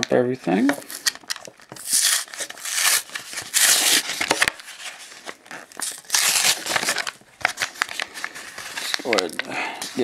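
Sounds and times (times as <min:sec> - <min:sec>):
packaging crinkling: 0:00.7 - 0:10.0.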